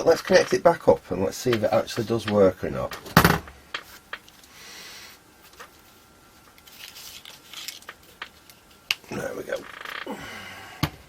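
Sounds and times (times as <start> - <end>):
soft scraping rustle: 3.8 - 8.9.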